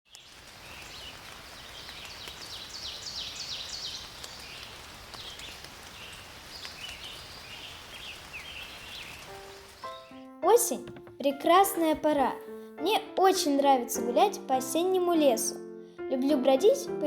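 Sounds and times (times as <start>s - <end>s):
outdoor hiss: 0.1s - 10.2s
songbirds chirping: 0.1s - 11.0s.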